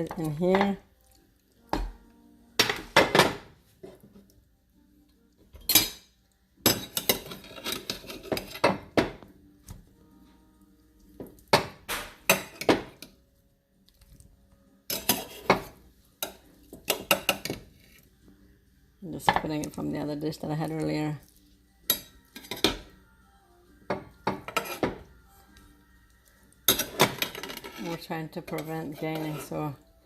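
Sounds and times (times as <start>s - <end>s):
spatula clinking on dishes: 5.6s - 8.9s, 14.9s - 17.6s, 21.8s - 22.9s, 23.9s - 25.1s, 26.7s - 29.6s.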